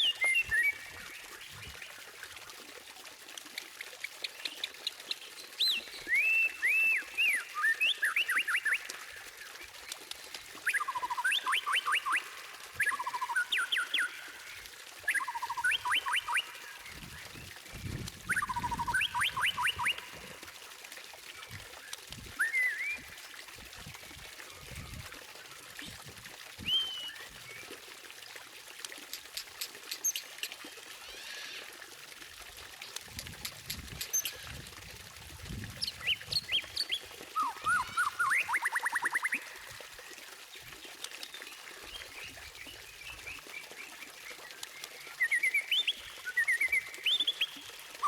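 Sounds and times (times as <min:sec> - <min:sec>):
songbird singing: 0:15.1 - 0:20.2.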